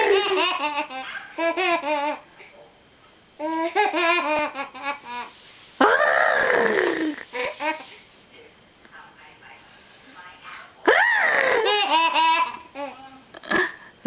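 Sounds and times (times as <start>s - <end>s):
toddler giggling: 0.0s - 2.2s
silly swooping vocal noise: 5.8s - 7.3s.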